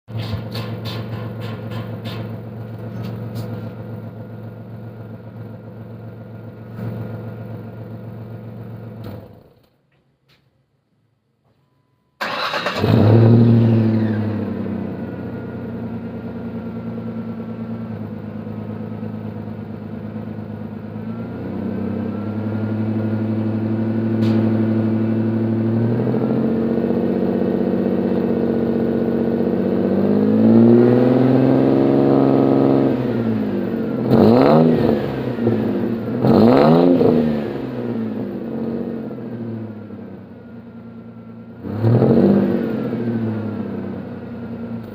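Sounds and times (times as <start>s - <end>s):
truck engine starting and revving: 12.2s - 16.3s, 21.0s - 40.2s, 41.5s - 44.9s.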